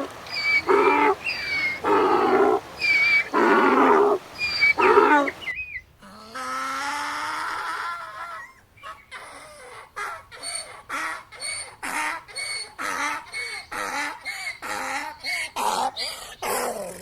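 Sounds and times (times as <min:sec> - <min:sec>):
donkey braying: 0:00.0 - 0:05.4.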